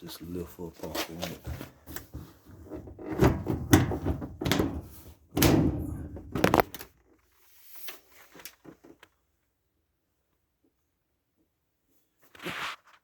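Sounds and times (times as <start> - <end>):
soft handling sounds: 0.1 - 3.2
dryer door knocks and clunks: 2.2 - 6.8.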